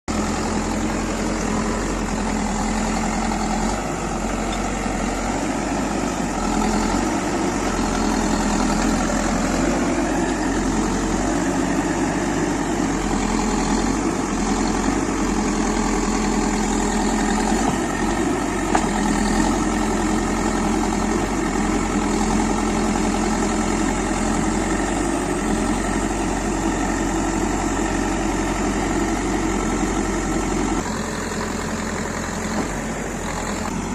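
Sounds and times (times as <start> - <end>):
diesel engine running: 0.1 - 33.9.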